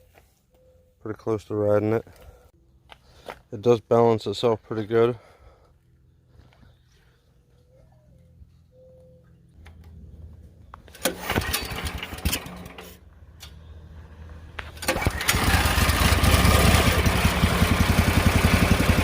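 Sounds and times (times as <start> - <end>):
small engine starting and running: 10.9 - 13.6, 14.6 - 19.0.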